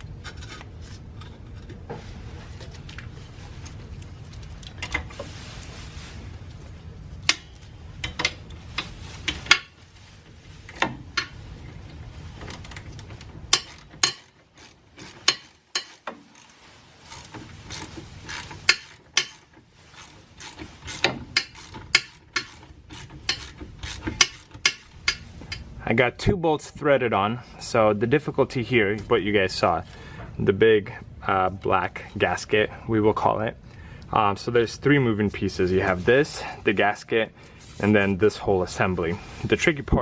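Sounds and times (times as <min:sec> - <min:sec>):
metal bolts clicking and clinking: 0:12.4 - 0:16.3, 0:17.8 - 0:19.6.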